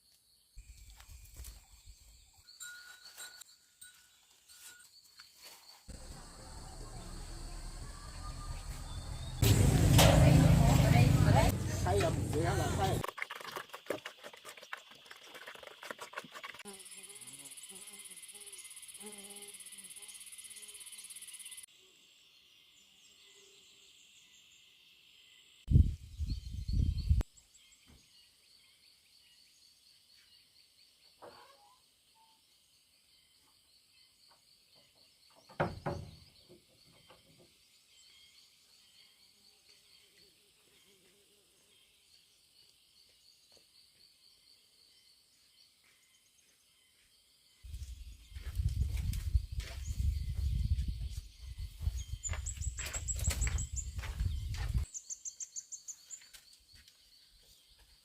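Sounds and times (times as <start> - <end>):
insects chirring: 0.3 - 9.4, 10.2 - 25.6
low rumbles: 5.9 - 13.0
pulsing insect trill: 15.6 - 21.7.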